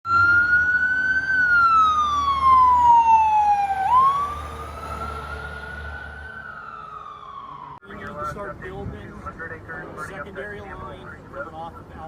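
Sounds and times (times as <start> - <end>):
wailing siren: 0.1 - 7.9.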